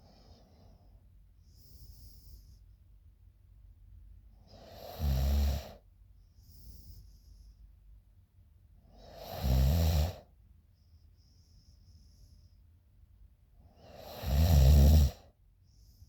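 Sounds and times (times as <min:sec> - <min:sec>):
woman snoring: 0:04.7 - 0:05.8, 0:09.0 - 0:10.2, 0:13.8 - 0:15.2.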